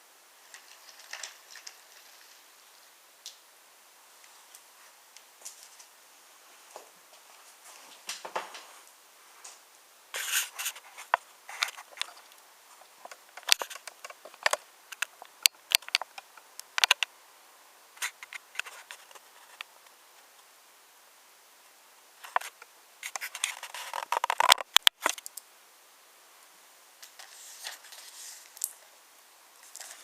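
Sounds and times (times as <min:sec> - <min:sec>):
wooden toy train rattling on track: 0:00.5 - 0:02.5.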